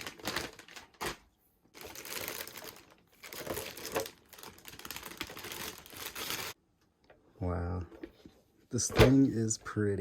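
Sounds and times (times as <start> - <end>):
packaging crinkling and rustling: 0.0 - 6.6.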